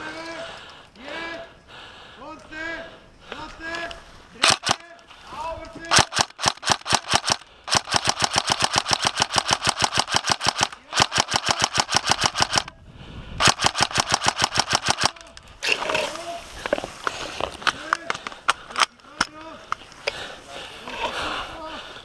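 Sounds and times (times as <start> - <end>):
airsoft gun firing full auto: 4.4 - 4.8, 5.9 - 12.7, 13.4 - 15.3.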